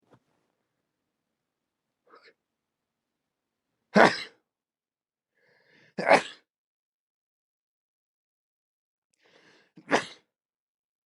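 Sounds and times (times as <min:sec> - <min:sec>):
man sneezing: 0:03.9 - 0:04.4, 0:06.0 - 0:06.5, 0:09.8 - 0:10.3
faint in-breath: 0:05.3 - 0:06.0, 0:09.2 - 0:09.8.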